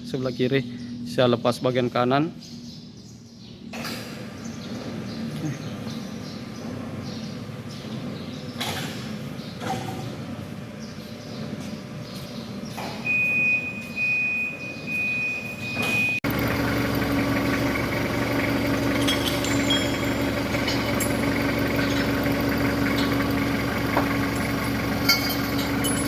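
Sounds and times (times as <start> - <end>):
heavy machine engine humming: 14.8 - 26.0.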